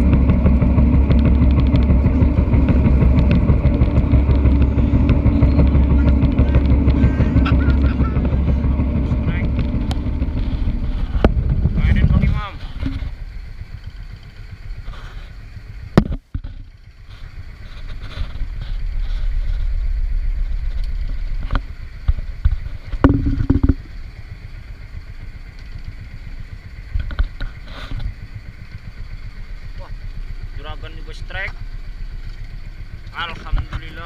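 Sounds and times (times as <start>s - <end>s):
boat engine running: 0.0s - 34.0s
knocks and clatters on board: 22.4s - 23.9s.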